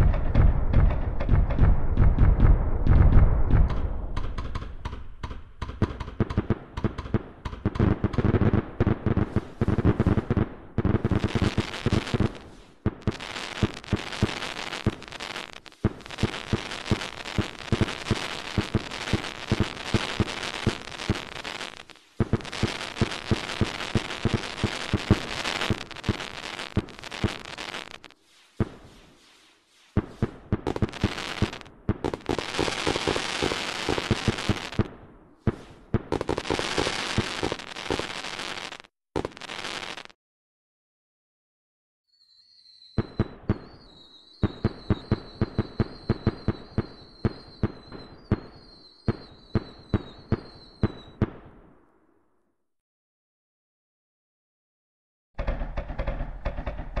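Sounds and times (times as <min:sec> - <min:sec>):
fireworks crackling: 0:05.7 - 0:40.2, 0:43.0 - 0:51.2, 0:55.4 - 0:57.0.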